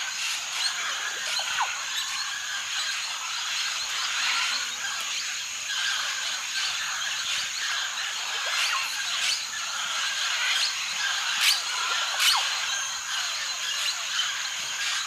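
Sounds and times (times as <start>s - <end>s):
parrot chicks raspy begging calls: 0.0s - 15.0s.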